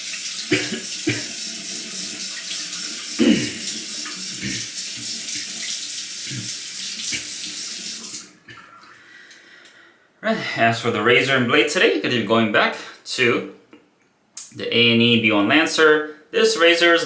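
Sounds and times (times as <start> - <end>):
tap running into sink: 0.0 - 8.2.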